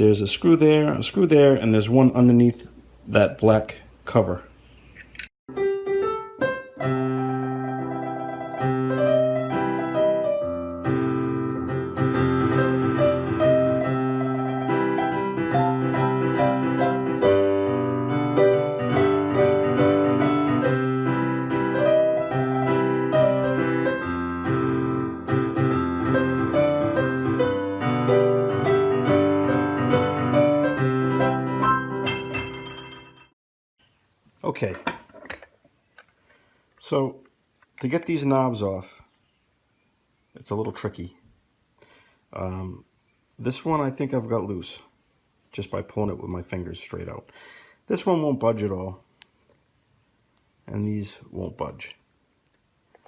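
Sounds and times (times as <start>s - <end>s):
piano piece: 5.5s - 33.4s.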